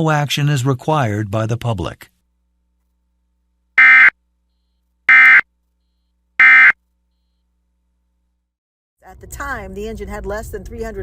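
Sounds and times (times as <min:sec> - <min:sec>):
digital data tone bursts: 0:03.8 - 0:04.1, 0:05.1 - 0:05.4, 0:06.4 - 0:06.8.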